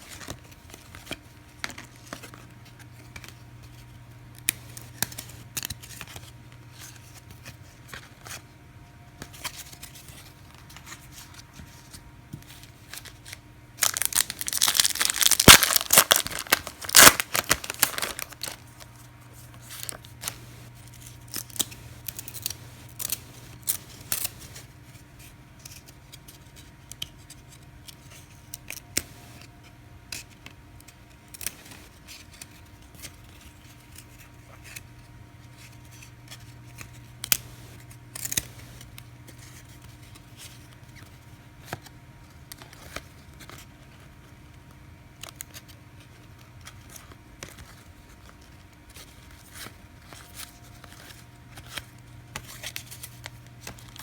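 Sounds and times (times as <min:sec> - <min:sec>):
steady low hum: 0:02.5 - 0:25.7, 0:27.6 - 0:42.1
trading cards snapping and ticking: 0:13.8 - 0:18.6.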